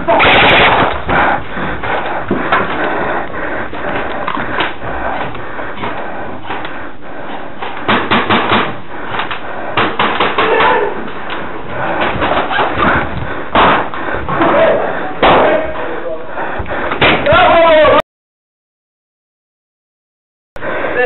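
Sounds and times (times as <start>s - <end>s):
clatter in echoing room: 0.0s - 18.0s
sharp knocks: 7.8s - 8.8s, 9.8s - 10.8s, 12.0s - 14.0s.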